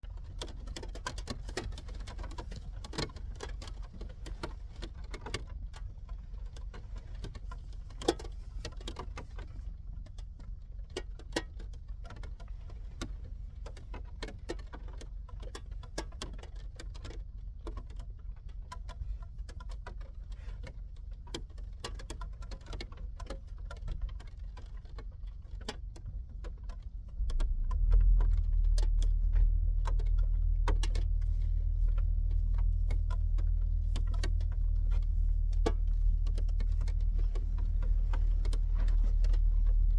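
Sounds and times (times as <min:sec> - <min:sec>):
steady low rumble: 0:26.2 - 0:39.9
loud low hum: 0:27.1 - 0:39.9.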